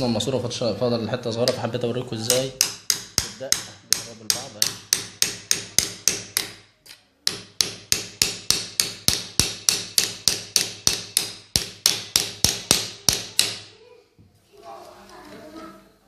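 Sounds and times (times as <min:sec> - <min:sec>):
hammer striking metal pipe: 0:02.3 - 0:06.7, 0:07.3 - 0:13.6.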